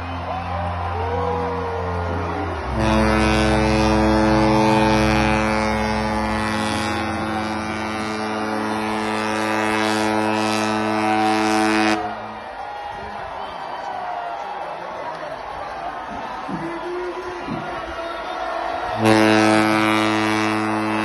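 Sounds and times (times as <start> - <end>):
ship's horn blast: 2.4 - 12.3, 18.9 - 21.0.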